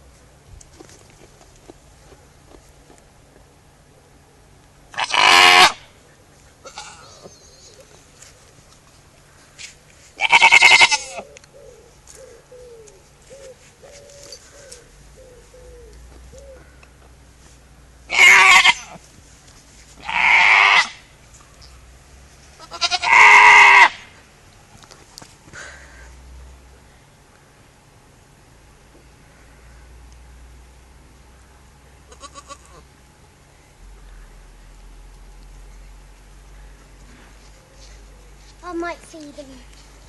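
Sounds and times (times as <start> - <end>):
goat bleating: 4.9 - 5.8, 6.6 - 7.1, 10.2 - 11.2, 18.1 - 19.0, 20.0 - 21.0, 22.6 - 24.0, 32.1 - 32.8.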